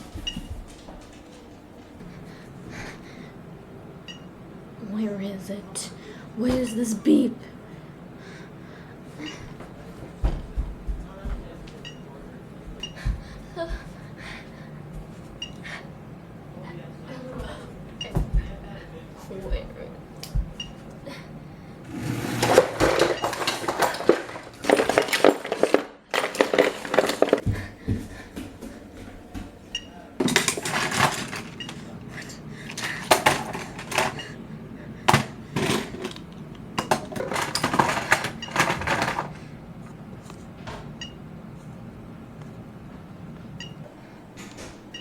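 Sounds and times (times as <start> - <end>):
household objects clattering: 21.9 - 29.6, 30.2 - 34.4, 35.0 - 39.4.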